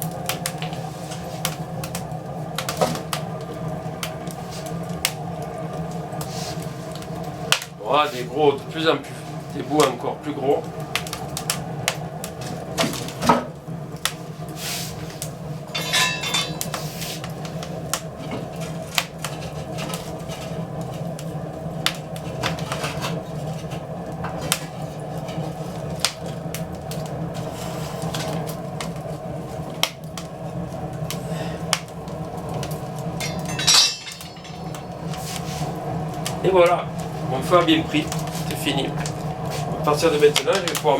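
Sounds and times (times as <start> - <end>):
fire crackling and popping: 0.0 - 40.9
low hum: 15.6 - 17.0, 32.9 - 35.2
wood clattering: 15.8 - 16.8, 33.2 - 34.9
wood pieces knocking: 33.2 - 34.8.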